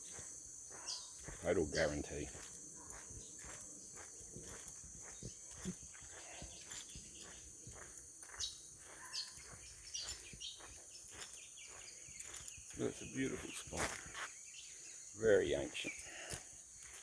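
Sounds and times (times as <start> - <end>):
bird chirps: 0.0 - 16.3
insect chorus: 0.0 - 17.0.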